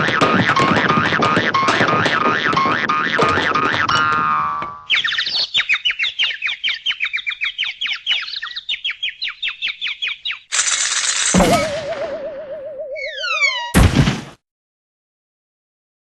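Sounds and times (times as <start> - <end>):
cartoon bird tweets: 4.9 - 10.5, 11.4 - 13.8.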